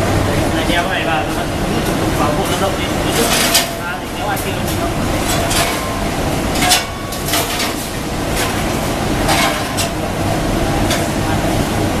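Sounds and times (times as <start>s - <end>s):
workshop machinery noise: 0.0s - 12.0s
metallic clanks and knocks: 4.4s - 10.0s.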